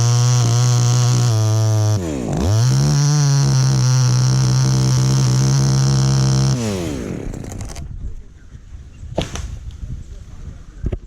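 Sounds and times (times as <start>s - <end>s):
chainsaw revving and winding down: 0.0s - 7.9s.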